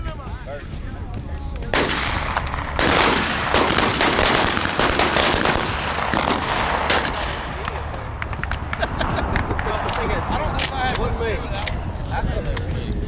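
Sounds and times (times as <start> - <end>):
shotgun shots with echo: 1.7 - 11.7.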